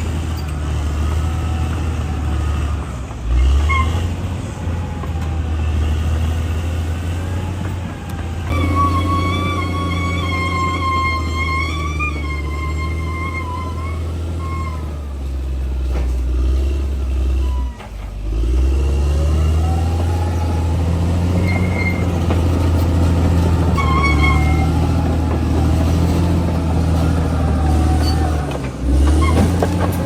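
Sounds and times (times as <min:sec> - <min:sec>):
bulldozer diesel engine: 0:00.0 - 0:30.0
short high squeals: 0:08.5 - 0:15.2, 0:21.3 - 0:22.3, 0:23.6 - 0:25.1.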